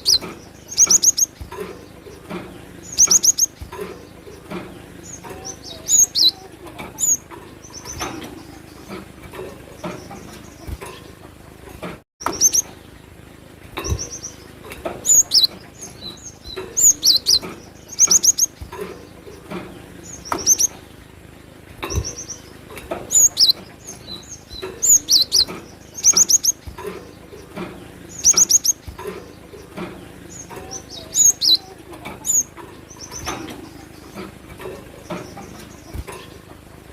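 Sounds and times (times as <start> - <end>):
bird singing high sharp notes: 0.0 - 1.4.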